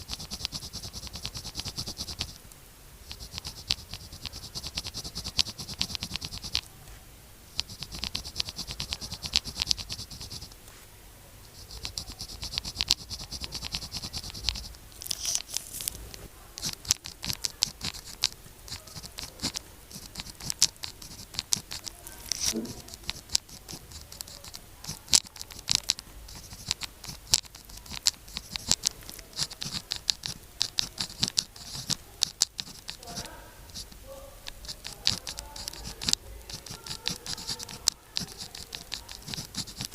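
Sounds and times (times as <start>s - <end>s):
pen scratching on paper: 0.0s - 2.4s, 3.0s - 6.7s, 7.6s - 10.6s, 11.4s - 39.9s
pen tip tapping: 0.0s - 2.4s, 11.6s - 16.0s, 16.6s - 33.9s, 34.5s - 39.9s.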